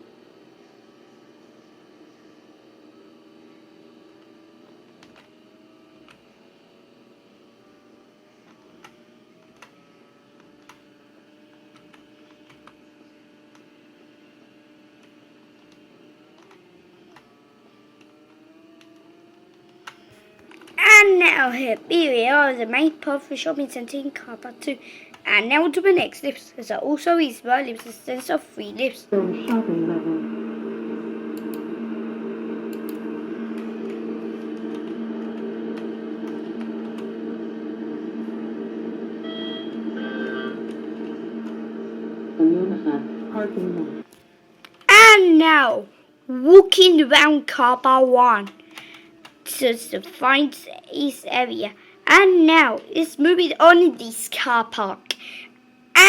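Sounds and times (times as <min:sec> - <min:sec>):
faint steady hum: 0:07.0 - 0:56.0
lift humming in motion: 0:28.6 - 0:44.1.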